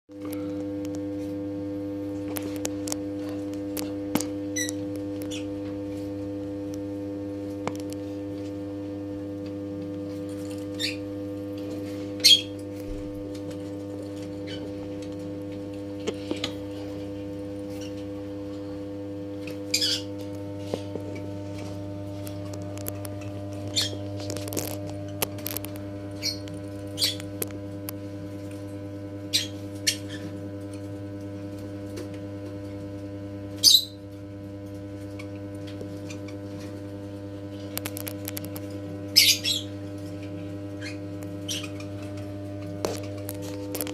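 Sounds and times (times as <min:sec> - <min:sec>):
electrical hum: 0:00.1 - 0:43.9
birds chirping and squawking: 0:04.6 - 0:05.6, 0:10.7 - 0:11.1, 0:11.8 - 0:12.6, 0:14.4 - 0:14.7, 0:19.5 - 0:20.2, 0:22.5 - 0:27.5, 0:29.3 - 0:30.4, 0:33.6 - 0:34.1, 0:37.8 - 0:40.1, 0:40.7 - 0:42.3.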